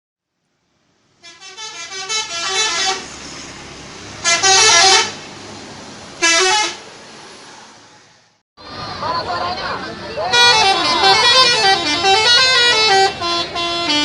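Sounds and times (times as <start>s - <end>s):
street noise: 0.2s - 14.0s
musical bus horn: 1.2s - 3.1s, 4.2s - 5.2s, 6.2s - 6.8s, 10.3s - 14.0s.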